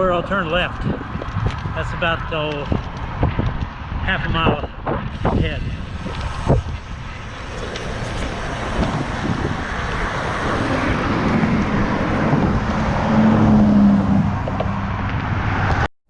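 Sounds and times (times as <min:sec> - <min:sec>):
road traffic noise: 0:00.0 - 0:15.9
vehicle passing close: 0:05.0 - 0:15.9.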